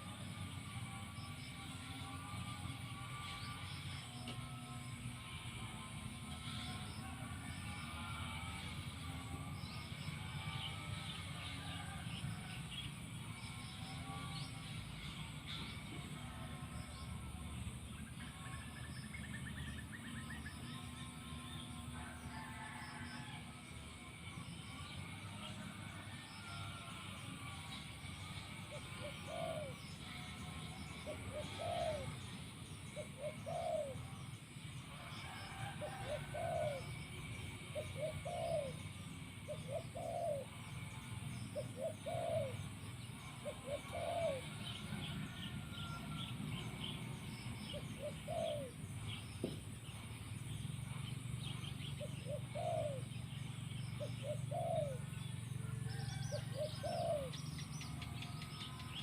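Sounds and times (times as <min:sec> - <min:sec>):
dove cooing: 0:20.0 - 0:50.1, 0:50.9 - 0:59.0.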